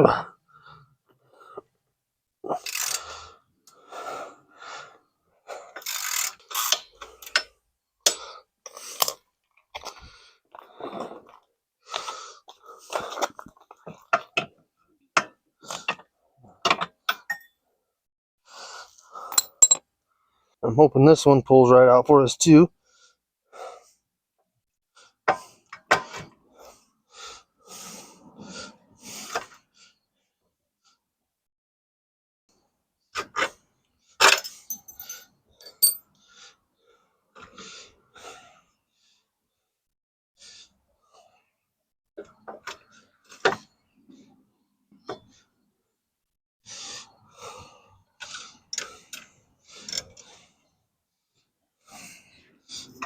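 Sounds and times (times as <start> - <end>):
man breathing heavily and grunting: 0.0 - 1.7, 2.4 - 5.8.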